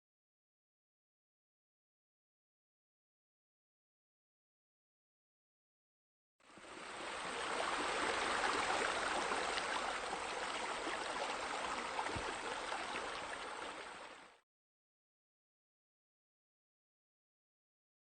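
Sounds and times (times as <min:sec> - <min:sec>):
flowing splashing water: 0:06.5 - 0:14.4.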